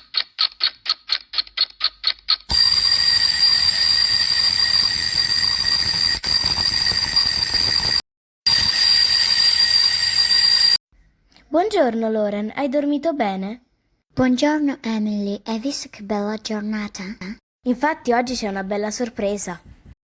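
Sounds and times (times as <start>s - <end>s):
alarm clock bell ringing: 2.5s - 10.8s
alarm clock fast high beeping: 2.5s - 10.8s.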